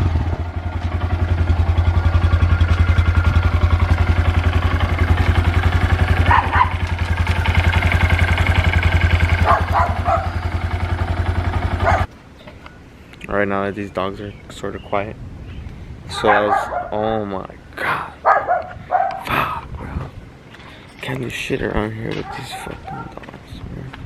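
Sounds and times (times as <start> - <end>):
motorcycle engine idling: 0.0 - 13.2
dogs barking: 5.1 - 11.0, 11.6 - 12.1, 16.1 - 17.2, 18.2 - 19.4, 22.1 - 23.3.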